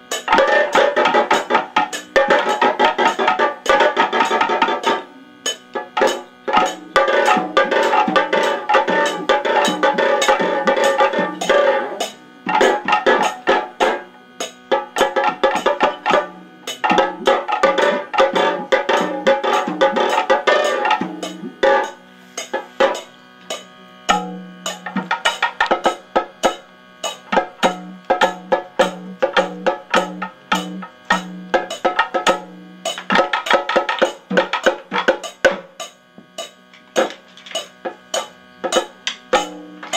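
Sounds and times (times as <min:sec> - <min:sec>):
fast drumming: 0:00.0 - 0:39.9
ringing pitched tones: 0:00.0 - 0:39.9.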